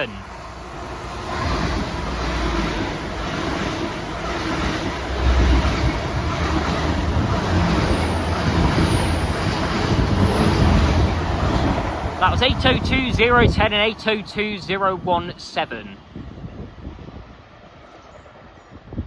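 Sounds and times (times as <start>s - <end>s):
trains passing with rumble: 0.0s - 19.0s.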